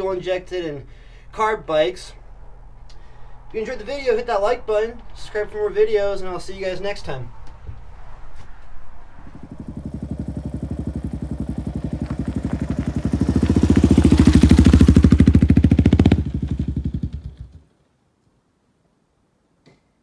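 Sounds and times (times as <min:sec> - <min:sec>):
motorcycle engine running: 0:09.3 - 0:17.6.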